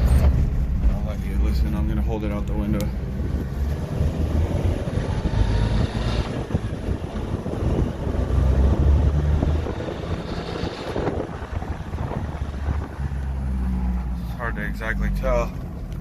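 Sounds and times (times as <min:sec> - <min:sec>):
wind on microphone: 0:03.0 - 0:13.3.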